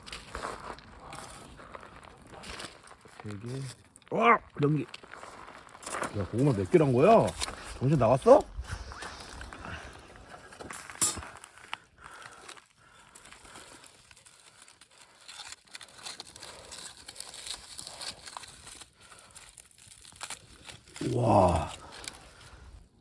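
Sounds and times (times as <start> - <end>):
fire crackling: 0.0 - 23.0
crinkling and rustling: 10.3 - 22.9.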